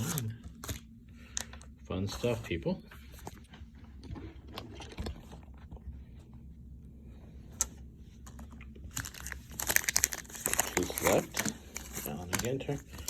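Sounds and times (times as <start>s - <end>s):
trading cards clicking: 9.0s - 13.0s.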